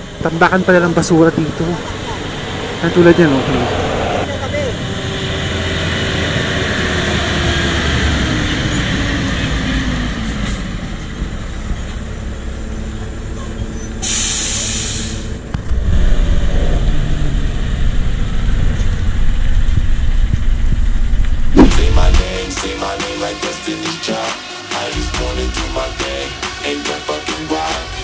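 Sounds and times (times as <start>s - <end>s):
heavy truck engine passing: 0.0s - 22.8s
air-brake hiss: 13.9s - 15.4s.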